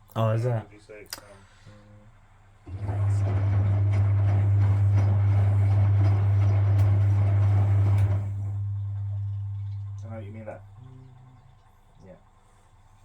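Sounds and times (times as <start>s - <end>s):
washing machine motor humming: 2.6s - 12.9s.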